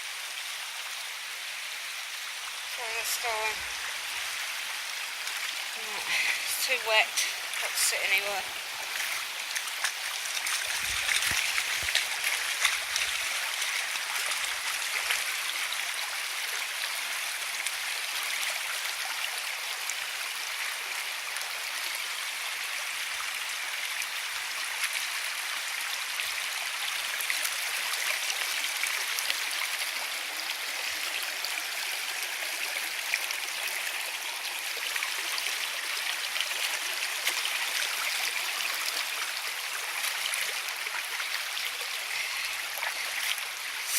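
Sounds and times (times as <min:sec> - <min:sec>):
river water rushing: 0:01.3 - 0:19.0.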